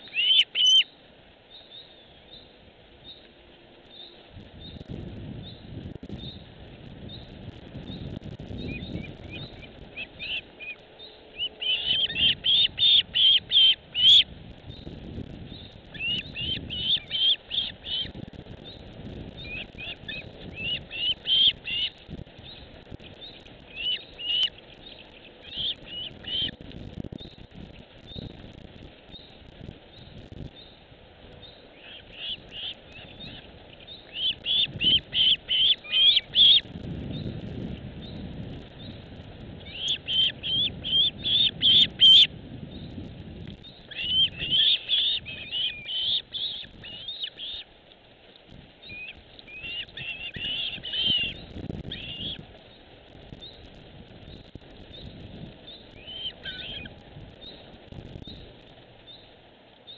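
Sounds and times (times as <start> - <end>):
bird chirping high notes: 41.8 - 42.3.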